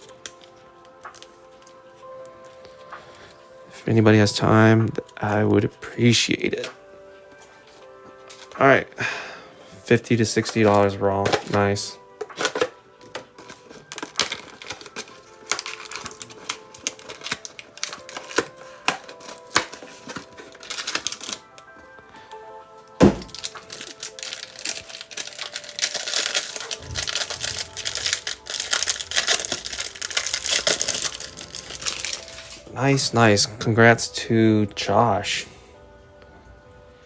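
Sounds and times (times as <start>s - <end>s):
pack wrapper crinkling: 0.0s - 2.9s, 10.5s - 21.9s, 22.9s - 33.1s
quiet background music: 0.0s - 37.0s.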